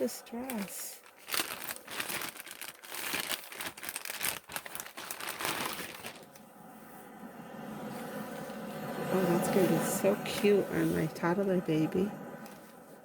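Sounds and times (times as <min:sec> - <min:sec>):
packaging rustling and crackling: 0:00.2 - 0:06.4.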